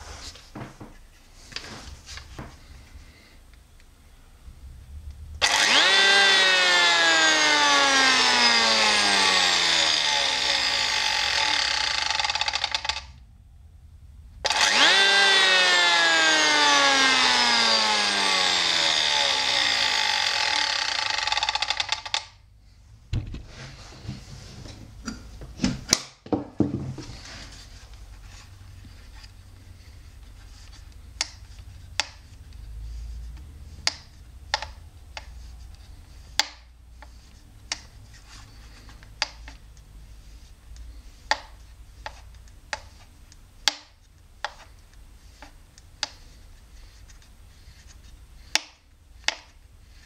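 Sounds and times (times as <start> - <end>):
electric hand planer spinning: 5.4 - 13.1, 14.4 - 22.4.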